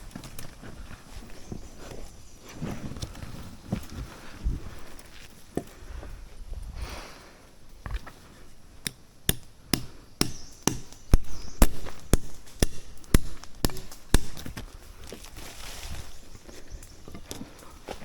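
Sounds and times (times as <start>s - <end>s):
chopping blows: 8.9s - 14.8s.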